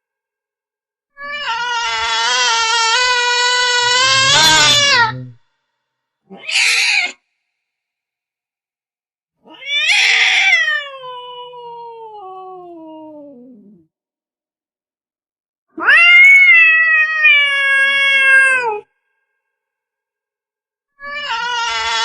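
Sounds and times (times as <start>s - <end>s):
cat meowing: 1.2s - 5.4s, 9.5s - 10.9s, 15.8s - 18.8s.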